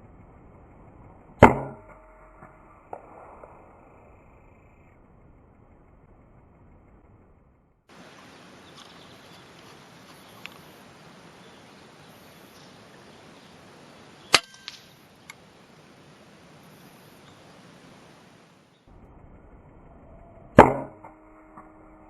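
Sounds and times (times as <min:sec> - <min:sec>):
steady hiss: 0:00.0 - 0:20.6
faint clicks: 0:08.1 - 0:10.8
rifle shot: 0:14.3 - 0:14.9.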